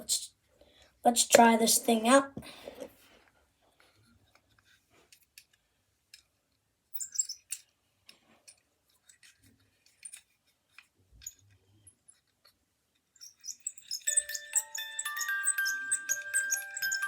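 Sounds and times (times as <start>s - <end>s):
toy clicking and rattling: 6.9s - 17.0s.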